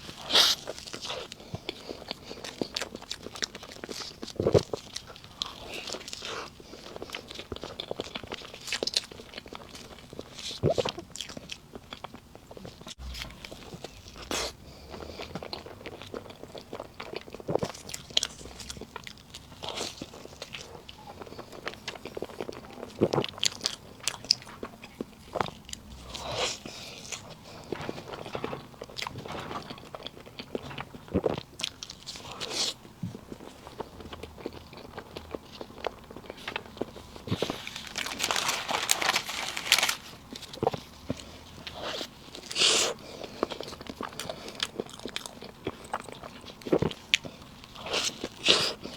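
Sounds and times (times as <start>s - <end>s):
eating cake close up: 0.0s - 48.9s.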